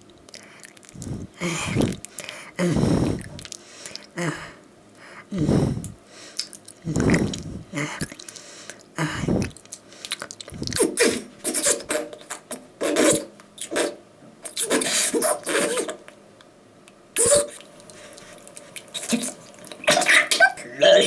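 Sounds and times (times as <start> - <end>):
man making mouth noises: 1.0 - 3.5, 6.8 - 8.2, 19.0 - 21.0.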